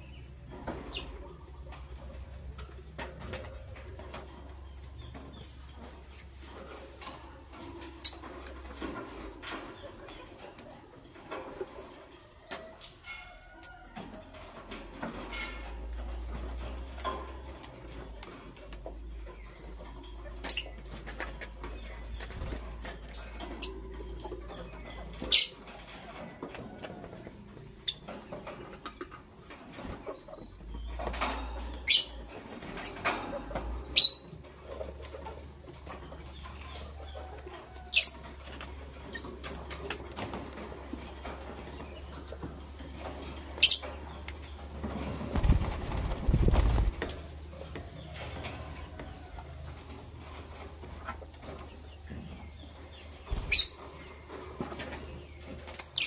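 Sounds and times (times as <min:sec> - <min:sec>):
lovebirds chirping: 0:29.9 - 0:32.3, 0:33.8 - 0:34.4, 0:43.5 - 0:44.6, 0:51.8 - 0:54.2.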